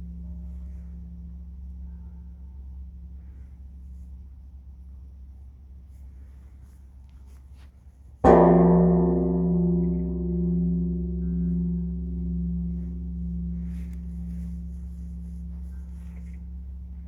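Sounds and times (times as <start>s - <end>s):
large temple bell ringing: 8.2s - 17.0s.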